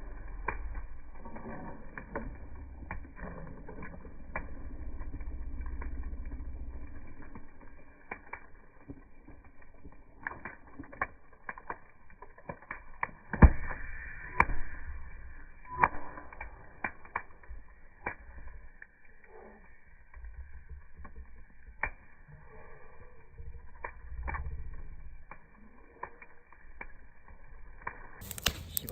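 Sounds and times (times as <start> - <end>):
slowed campfire crackling: 0.0 - 28.9.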